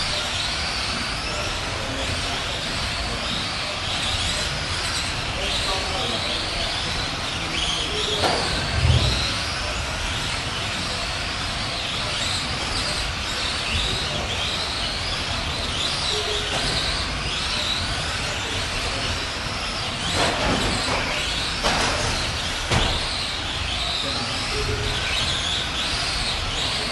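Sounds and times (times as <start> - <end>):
toy truck motors whining: 0.0 - 26.9.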